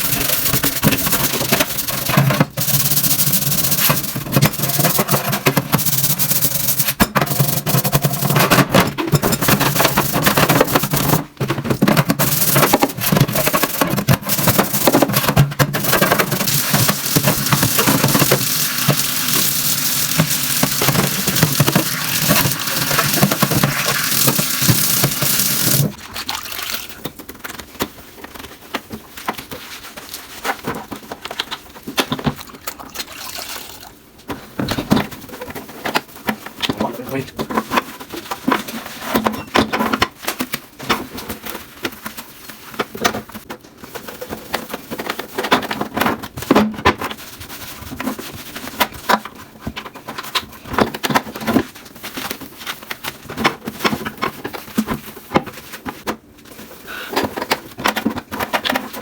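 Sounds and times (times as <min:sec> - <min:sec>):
scrubbing kitchen surfaces: 0:12.0 - 0:26.3.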